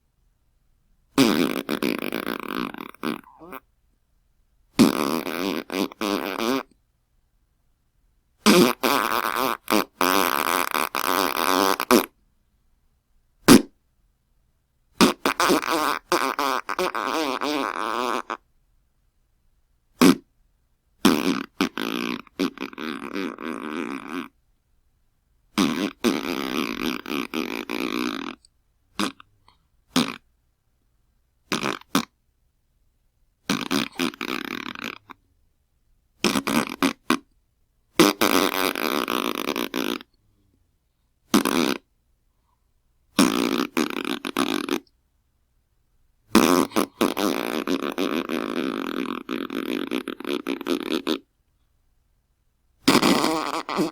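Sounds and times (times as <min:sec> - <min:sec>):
fart sound effects: 0:01.2 - 0:03.6, 0:04.8 - 0:06.7, 0:08.4 - 0:12.2, 0:13.5 - 0:13.7, 0:15.0 - 0:18.4, 0:20.0 - 0:20.3, 0:21.0 - 0:24.4, 0:25.6 - 0:28.4, 0:29.0 - 0:29.2, 0:29.9 - 0:30.2, 0:31.5 - 0:32.1, 0:33.5 - 0:35.1, 0:36.2 - 0:37.2, 0:38.0 - 0:40.1, 0:41.3 - 0:41.8, 0:43.2 - 0:44.8, 0:46.3 - 0:51.3, 0:52.8 - 0:53.9.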